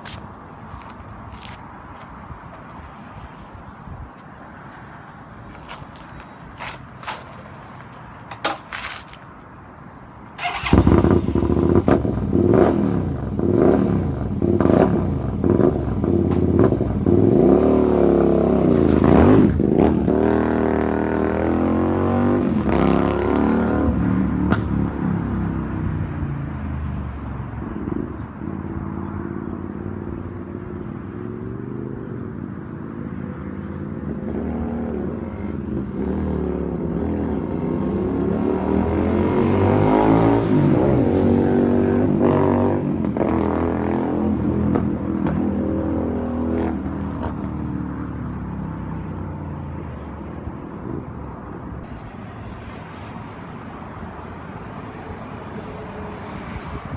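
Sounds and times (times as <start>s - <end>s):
motorcycle engine revving: 10.4s - 24.0s.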